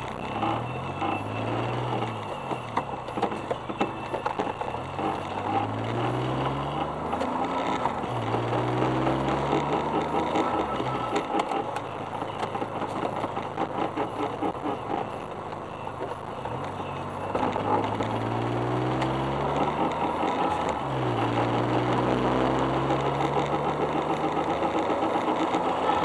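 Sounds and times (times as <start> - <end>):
low engine note: 0.0 - 26.0
wheel hub grinding: 0.0 - 26.0.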